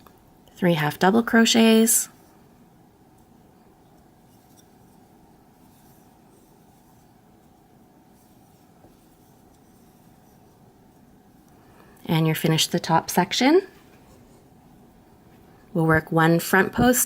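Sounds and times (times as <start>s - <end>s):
crochet hook rustling yarn: 0.0s - 12.6s, 13.6s - 15.8s.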